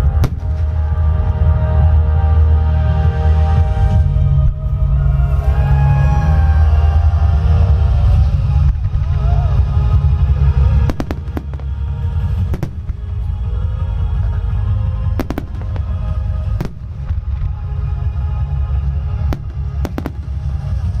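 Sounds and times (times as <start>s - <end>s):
fireworks bursting rumble: 0.0s - 2.0s, 6.4s - 21.0s
music: 0.0s - 21.0s
sharp firework cracks: 10.9s - 13.1s, 19.3s - 21.0s.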